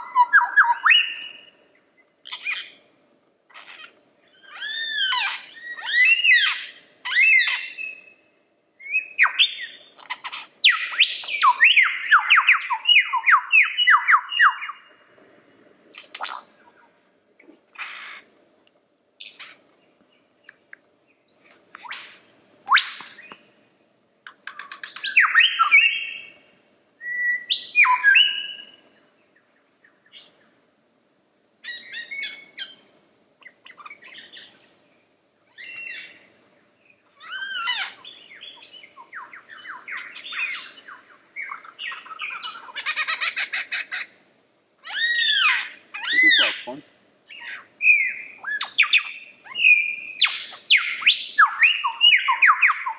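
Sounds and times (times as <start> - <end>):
lyrebird singing: 0.0 - 2.8, 3.5 - 8.2, 8.8 - 14.9, 19.2 - 23.6, 24.2 - 26.4, 27.0 - 30.5, 31.6 - 34.7, 35.5 - 44.2, 44.8 - 52.9.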